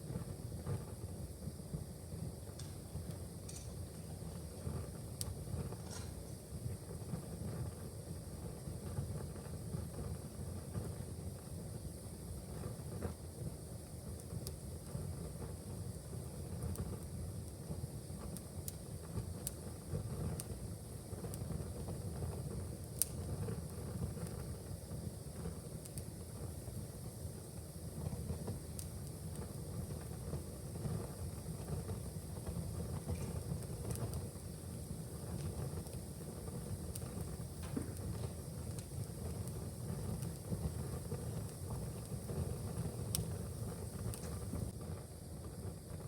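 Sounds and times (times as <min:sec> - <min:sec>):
wood fire crackling: 0:00.0 - 0:46.0
sharp fire pop: 0:02.5 - 0:04.1, 0:05.2 - 0:06.4, 0:32.9 - 0:34.3, 0:36.5 - 0:44.8.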